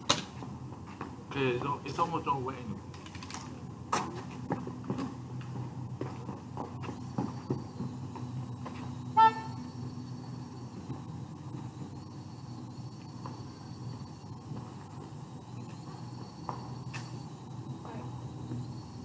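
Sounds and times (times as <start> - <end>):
low hum: 0.0 - 19.0
loud horn-like beep: 9.1 - 9.7.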